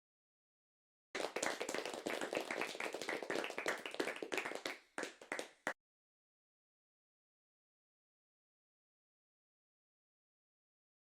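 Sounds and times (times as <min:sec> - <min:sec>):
many overlapping sharp claps: 0:01.2 - 0:05.8.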